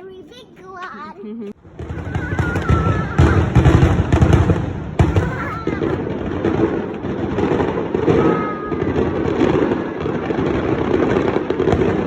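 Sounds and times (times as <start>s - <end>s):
fireworks crackling: 0.0s - 12.0s
firework whistle: 1.8s - 11.3s.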